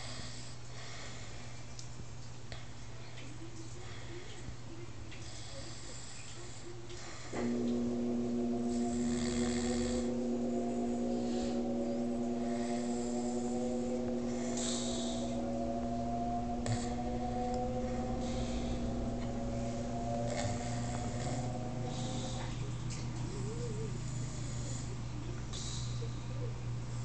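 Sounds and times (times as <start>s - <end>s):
steady hum: 0.0s - 27.0s
man snoring: 7.3s - 19.0s.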